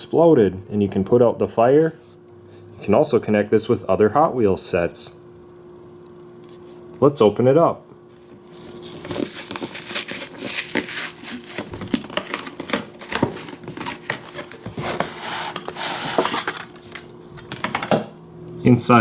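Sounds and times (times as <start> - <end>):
cardboard and plastic rustling: 8.1 - 18.0.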